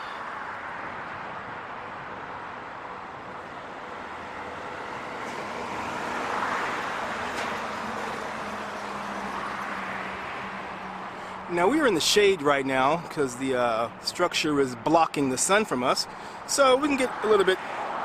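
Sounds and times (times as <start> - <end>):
road traffic: 0.0 - 18.0
vehicle passing: 3.7 - 14.0.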